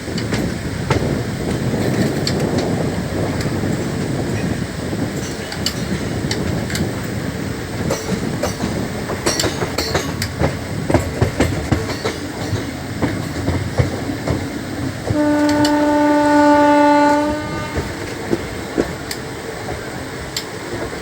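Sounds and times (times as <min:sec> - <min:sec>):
train wheels clattering over rails: 0:00.0 - 0:21.0
train horn blast: 0:15.1 - 0:18.2.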